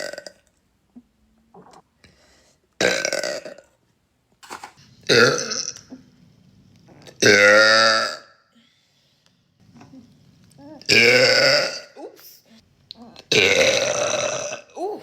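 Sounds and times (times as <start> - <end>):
woman burping loudly: 0.0 - 0.5, 2.8 - 3.7, 5.1 - 6.0, 7.1 - 8.3, 10.8 - 12.0, 13.2 - 15.0.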